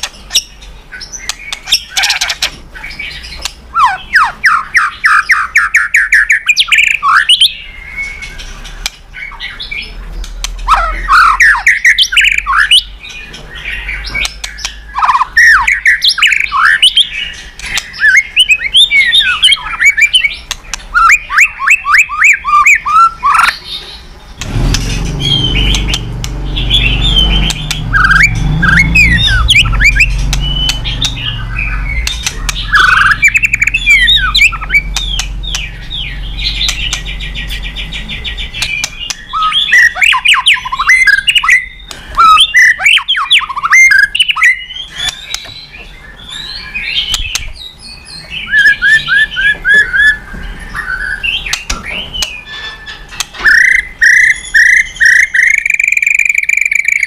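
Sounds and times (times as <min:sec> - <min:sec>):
bird singing varied song: 0:00.0 - 0:57.0
low hum: 0:24.1 - 0:40.0.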